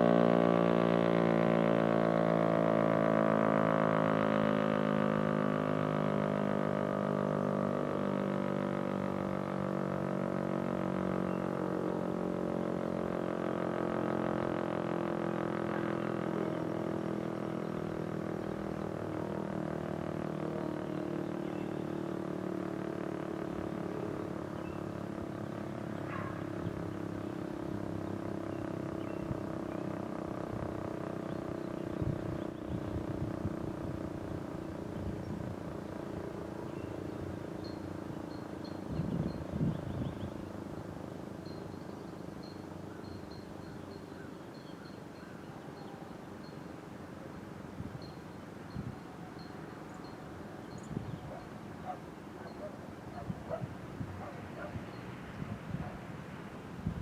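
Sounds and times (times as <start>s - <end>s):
bird chirp: 20.2s - 27.4s, 28.0s - 33.3s, 34.6s - 46.7s, 47.8s - 56.0s.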